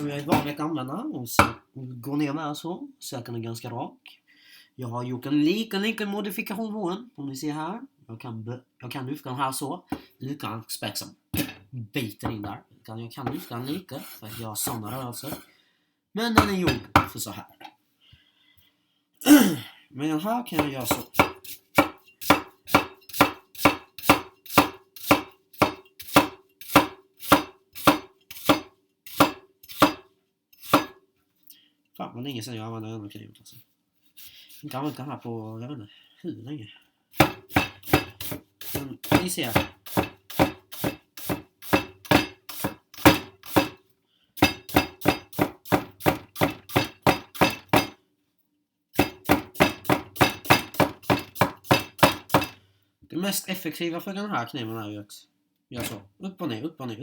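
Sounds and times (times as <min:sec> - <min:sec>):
knife chopping on cutting board: 0:00.2 - 0:00.6, 0:13.2 - 0:13.5, 0:16.4 - 0:17.2, 0:20.6 - 0:30.0, 0:30.6 - 0:30.9, 0:37.2 - 0:43.8, 0:44.4 - 0:48.0, 0:49.0 - 0:52.6.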